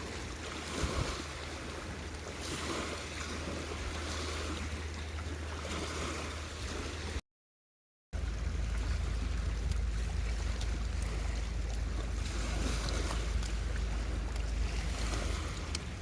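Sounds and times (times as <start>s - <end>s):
wind buffeting microphone: 0.0s - 7.2s, 8.2s - 16.0s.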